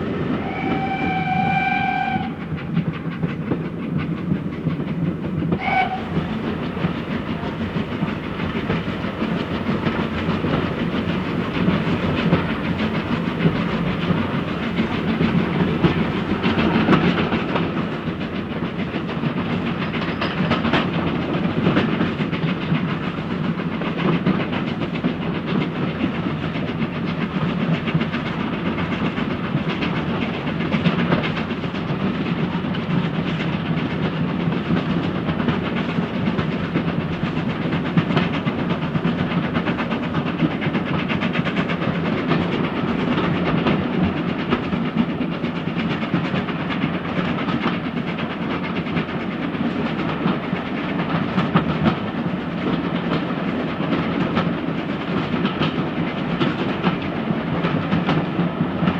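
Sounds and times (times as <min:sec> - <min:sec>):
steam train rumbling on track: 0:00.0 - 0:58.9.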